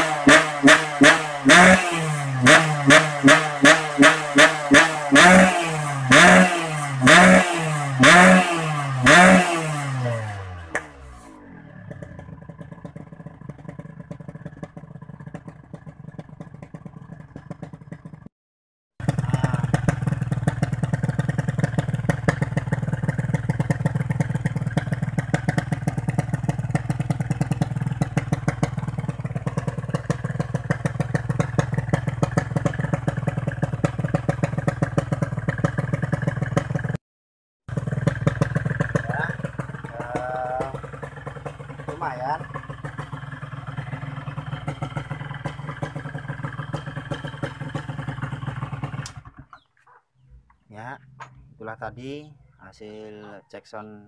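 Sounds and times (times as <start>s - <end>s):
motorcycle engine revving and idling: 0.0s - 18.3s, 19.0s - 37.0s, 37.7s - 49.8s.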